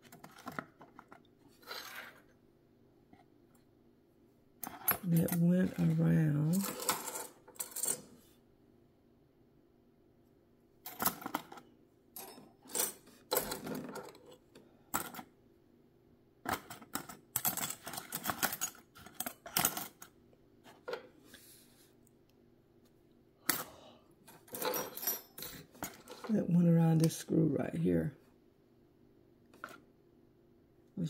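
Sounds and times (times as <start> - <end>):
small metal parts clattering: 4.6 - 8.2, 10.9 - 15.3, 16.4 - 20.1, 24.3 - 26.3.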